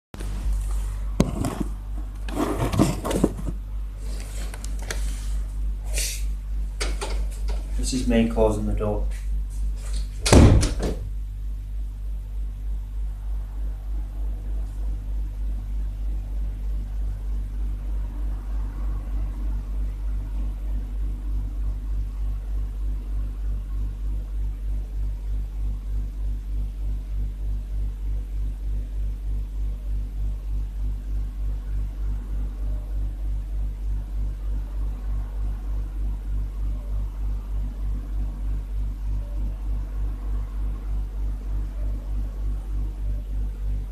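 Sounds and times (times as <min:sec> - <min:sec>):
scraping and rustling: 0:00.2 - 0:05.5
steady low hum: 0:00.2 - 0:43.9.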